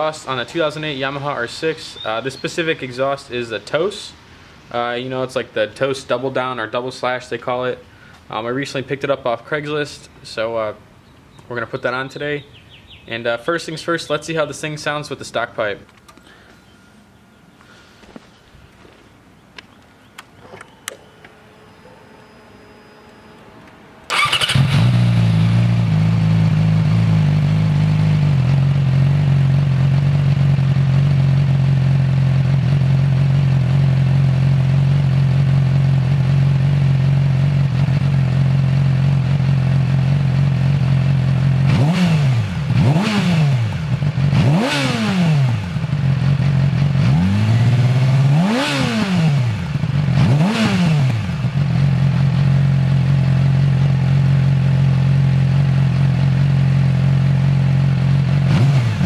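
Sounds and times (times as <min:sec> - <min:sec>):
motorcycle engine starting and idling: 0:20.0 - 0:59.0
motorcycle engine revving: 0:24.1 - 0:59.0.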